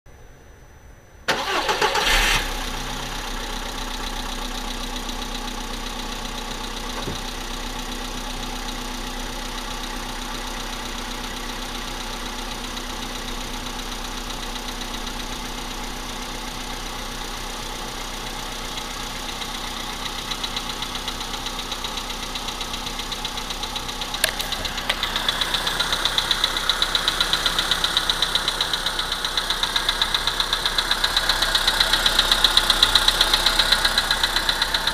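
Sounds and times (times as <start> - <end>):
engine cranking and idling: 1.3 - 34.9
engine knocking: 3.6 - 34.9.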